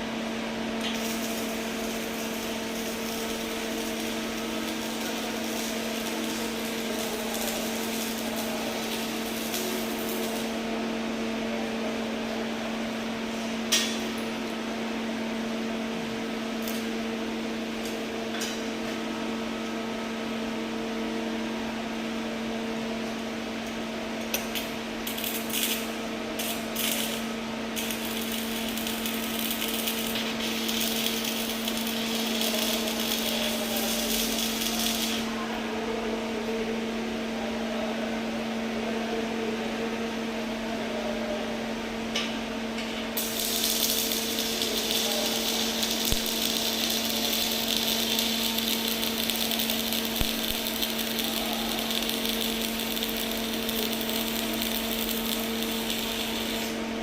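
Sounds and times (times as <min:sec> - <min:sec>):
welding machine humming: 0:00.0 - 0:11.2, 0:15.8 - 0:19.5, 0:23.6 - 0:35.4, 0:42.7 - 0:57.0.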